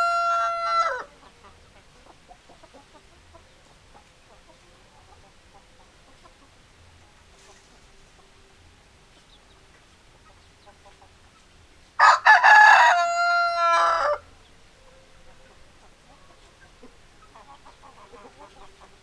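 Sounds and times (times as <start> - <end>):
rooster crowing: 0.0 - 1.1, 12.0 - 14.3
faint hen clucking: 0.0 - 19.0.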